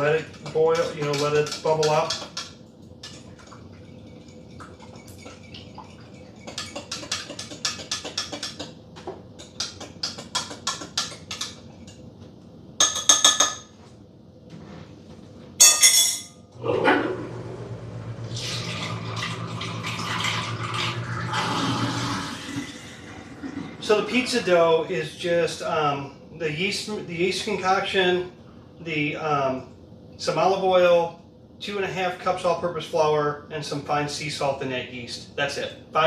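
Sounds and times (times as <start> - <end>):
spoon clinking in a cup: 15.6 - 16.4.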